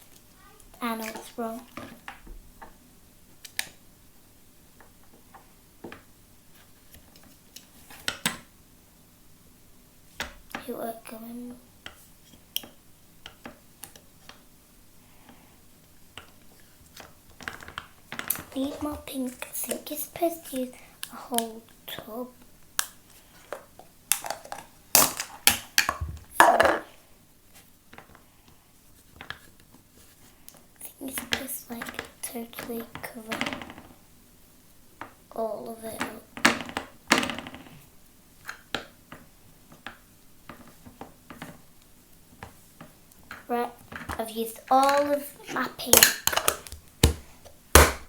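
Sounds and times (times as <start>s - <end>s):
plastic toy set handled: 43.3s - 47.2s
plastic toy pieces clicking: 45.8s - 46.8s.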